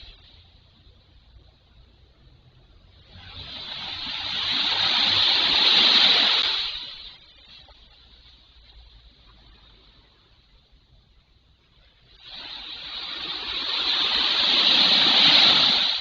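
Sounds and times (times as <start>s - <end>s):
faint low rumble: 0.0s - 16.0s
sea wave breaking: 3.0s - 8.4s, 12.0s - 16.0s.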